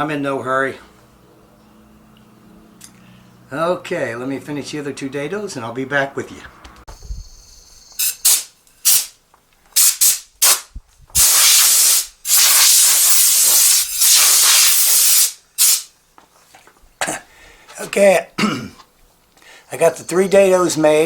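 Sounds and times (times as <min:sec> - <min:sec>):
hissing bursts: 0:07.0 - 0:09.2, 0:09.8 - 0:15.9.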